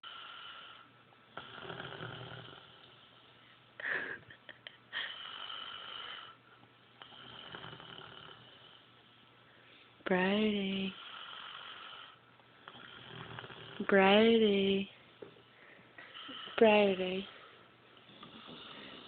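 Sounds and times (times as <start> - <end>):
person snoring slowly: 0.0 - 2.9, 5.0 - 6.4, 7.0 - 8.8, 10.8 - 13.9, 18.1 - 19.0.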